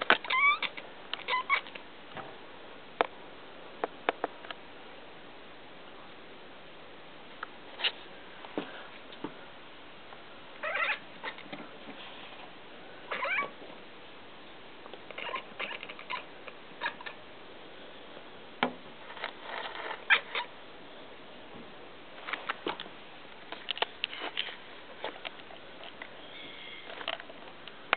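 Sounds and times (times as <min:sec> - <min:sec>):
kitten chirping and trilling: 0:00.2 - 0:01.8, 0:10.6 - 0:11.4, 0:13.1 - 0:13.6, 0:15.2 - 0:17.2, 0:20.0 - 0:20.5.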